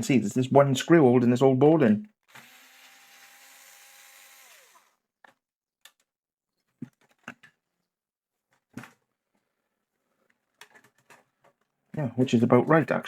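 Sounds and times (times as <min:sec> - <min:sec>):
electric screwdriver motor whine: 0:02.3 - 0:05.0.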